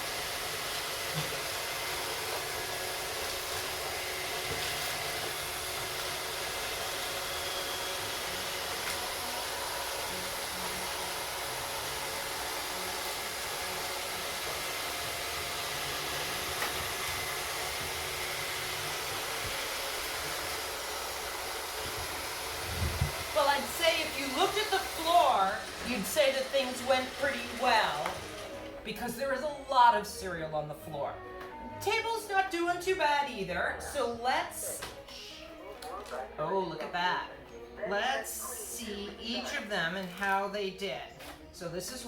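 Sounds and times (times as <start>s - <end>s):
robot vacuums whirring: 0.0s - 29.4s.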